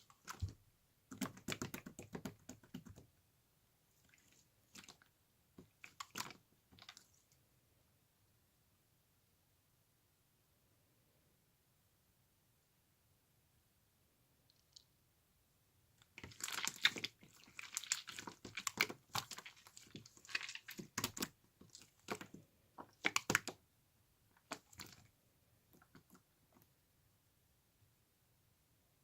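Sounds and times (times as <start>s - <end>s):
crunching and crinkling: 16.0s - 23.5s.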